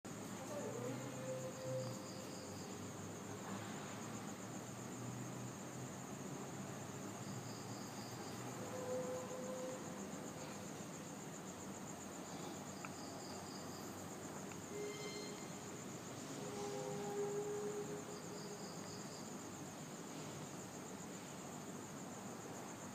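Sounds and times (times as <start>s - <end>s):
insects trilling: 0.1s - 22.9s
faint short tones: 14.7s - 15.6s.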